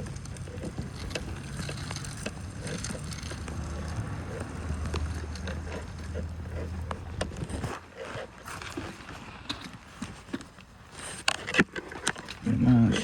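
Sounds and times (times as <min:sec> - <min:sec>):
vehicle engine rumble: 0:00.0 - 0:07.7
street background noise: 0:00.0 - 0:13.0.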